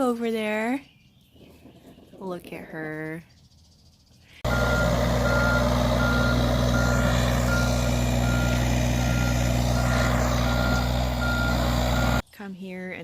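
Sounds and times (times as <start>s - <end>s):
vehicle engine running: 4.4s - 12.2s
reversing alarm beeping: 4.5s - 12.2s.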